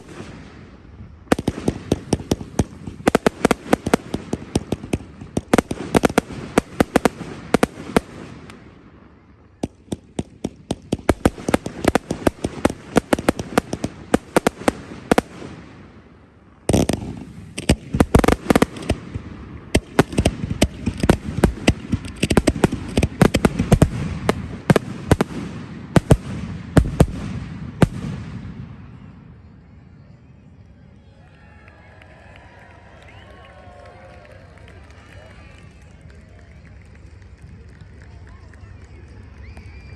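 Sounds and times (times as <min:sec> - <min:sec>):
fireworks bangs and crackling: 0:00.0 - 0:30.6.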